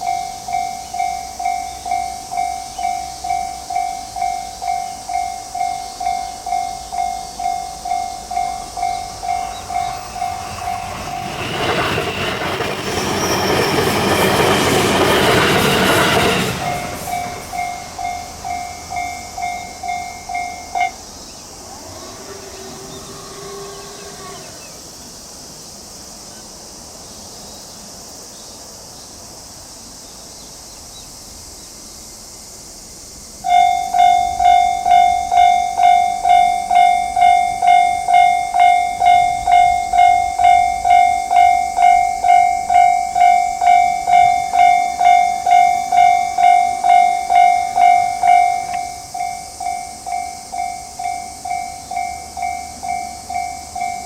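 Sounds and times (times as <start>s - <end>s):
level crossing warning bell: 0.0s - 21.2s, 33.5s - 54.0s
steady high hiss: 0.0s - 54.0s.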